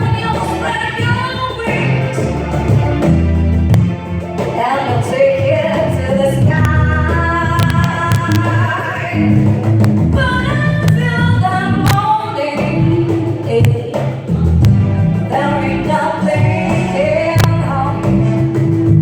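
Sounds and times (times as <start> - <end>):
live band playing bass and drums: 0.0 - 19.0
person singing: 15.3 - 18.7.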